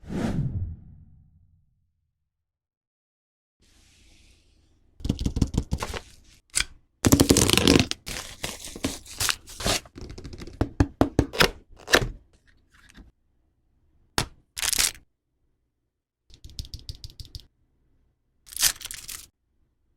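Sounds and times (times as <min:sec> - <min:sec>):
cardboard and plastic packaging handled: 0:05.7 - 0:06.4, 0:07.1 - 0:10.4.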